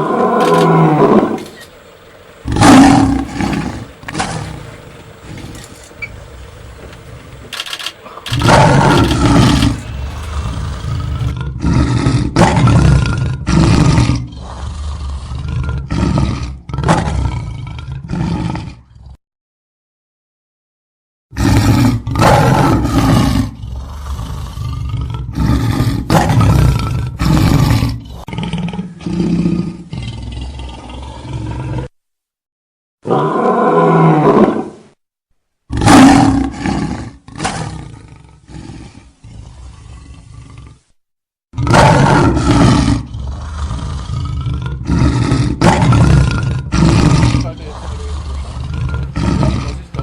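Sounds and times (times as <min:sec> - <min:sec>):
lion roaring and grunting: 0:00.0 - 0:19.2, 0:21.4 - 0:31.9, 0:33.0 - 0:34.9, 0:35.7 - 0:40.9, 0:41.6 - 0:50.0.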